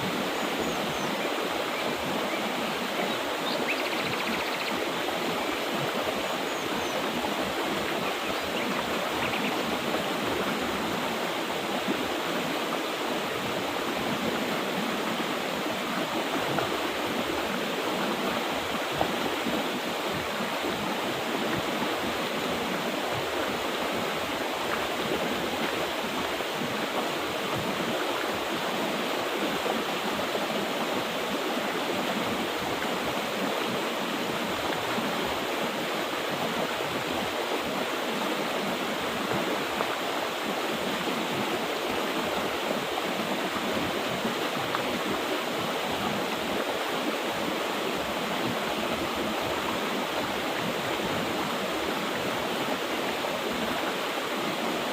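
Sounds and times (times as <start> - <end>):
river rushing over rocks: 0.0 - 54.9.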